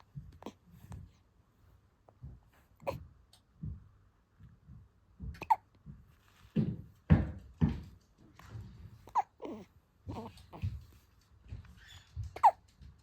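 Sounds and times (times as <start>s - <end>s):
baby hiccupping: 5.4s - 5.8s, 9.0s - 10.7s, 12.3s - 12.7s.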